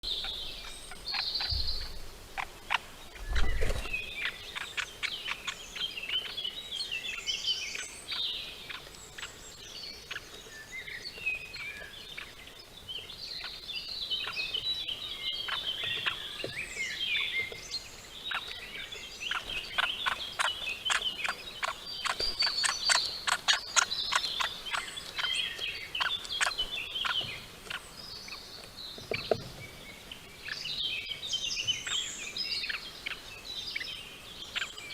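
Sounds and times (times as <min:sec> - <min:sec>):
songbirds singing: 0:00.0 - 0:34.9
low thump: 0:01.4 - 0:02.1.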